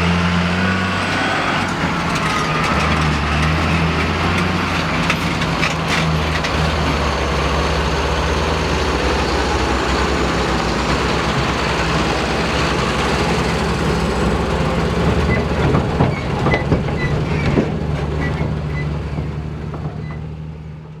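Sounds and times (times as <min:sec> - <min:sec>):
diesel engine running: 0:00.0 - 0:21.0
clicks and rattles: 0:01.6 - 0:07.0.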